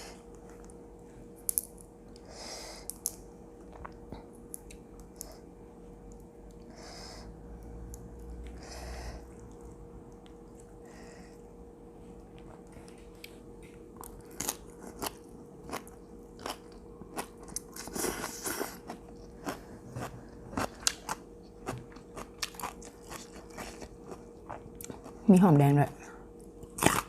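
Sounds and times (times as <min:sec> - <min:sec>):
chewing crunchy food: 0:12.2 - 0:25.3, 0:26.4 - 0:27.0.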